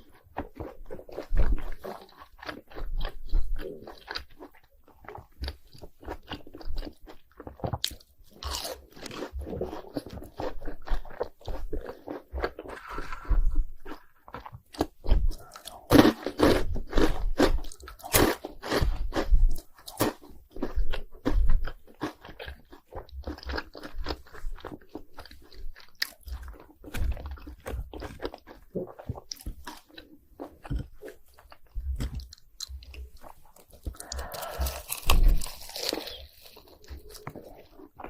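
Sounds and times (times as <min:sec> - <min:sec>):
crunching and chewing snacks: 0:00.0 - 0:38.0.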